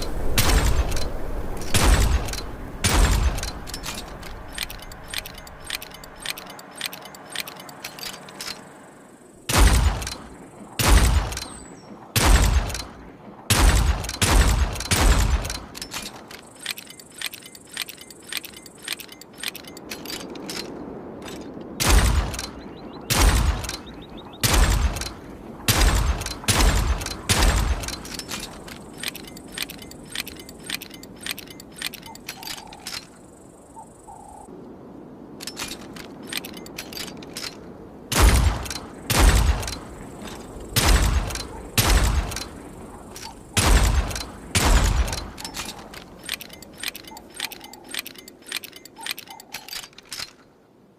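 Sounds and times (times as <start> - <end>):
revolver gunshots: 9.5 - 15.7, 40.8 - 42.6, 43.6 - 45.4.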